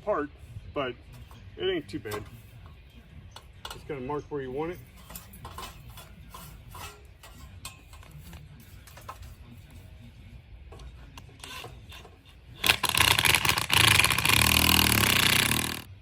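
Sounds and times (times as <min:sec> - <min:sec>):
impact wrench running: 0:11.4 - 0:15.9.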